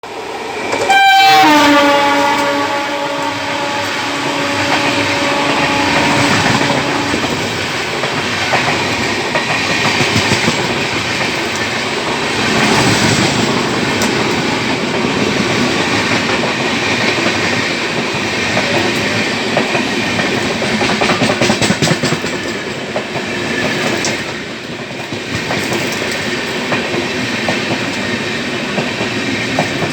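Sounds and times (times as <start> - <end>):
train rumbling on rails: 0.0 - 29.9
train horn: 0.7 - 8.8.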